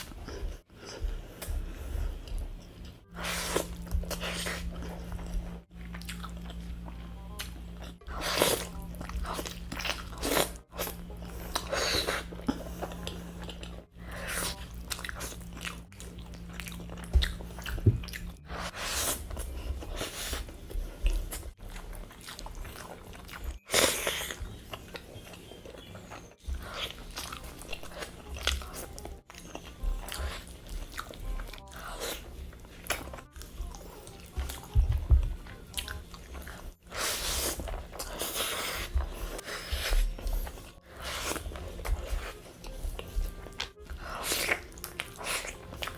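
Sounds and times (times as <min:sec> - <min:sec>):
crunchy bites and chewing: 0:35.7 - 0:45.9.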